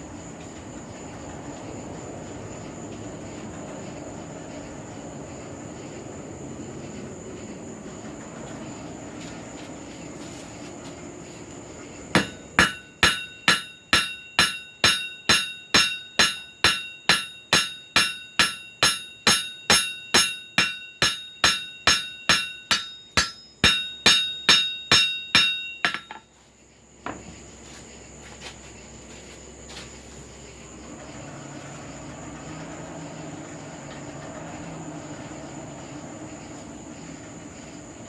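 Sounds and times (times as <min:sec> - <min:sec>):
hammer blows on an anvil: 0:12.1 - 0:26.3.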